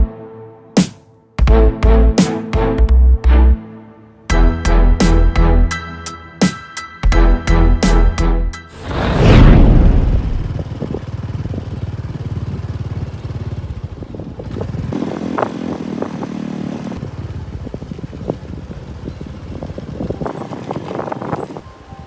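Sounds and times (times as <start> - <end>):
engine rumbling: 8.7 - 21.5.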